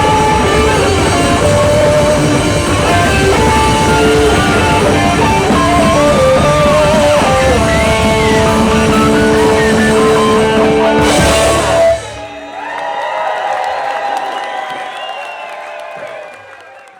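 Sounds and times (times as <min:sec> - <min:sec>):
rock band playing: 0:00.0 - 0:12.6.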